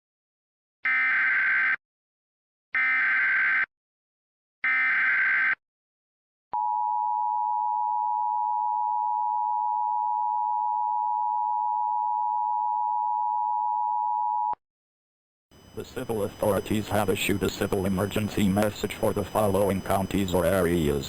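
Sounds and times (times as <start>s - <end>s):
loud steady attention tone: 15.6s - 21.0s
warbling data tones: 15.6s - 21.0s.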